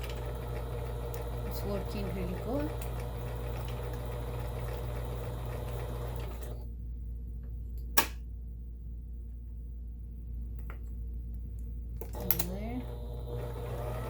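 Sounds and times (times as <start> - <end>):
sewing machine stitching: 0.0 - 6.6, 12.0 - 14.0.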